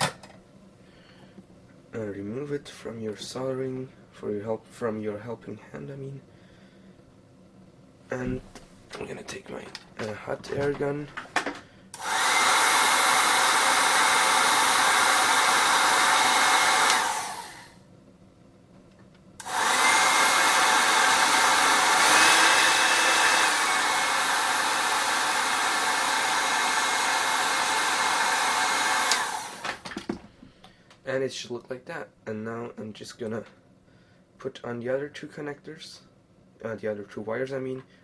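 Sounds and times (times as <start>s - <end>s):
hot air gun blowing: 11.9s - 17.8s, 19.4s - 29.8s.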